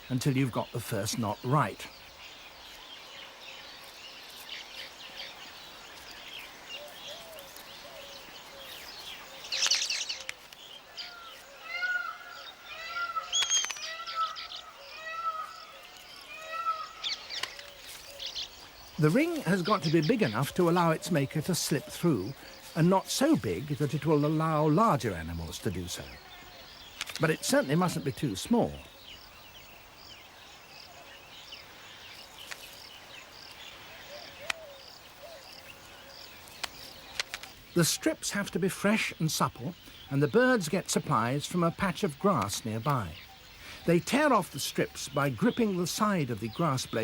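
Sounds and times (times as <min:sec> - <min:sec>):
birds chirping: 0:00.0 - 0:47.0
soft scattered twitters: 0:13.2 - 0:14.6
short high bird chirp: 0:13.3 - 0:14.0
sharp clicks: 0:13.4 - 0:13.9, 0:26.9 - 0:27.4, 0:36.5 - 0:37.6.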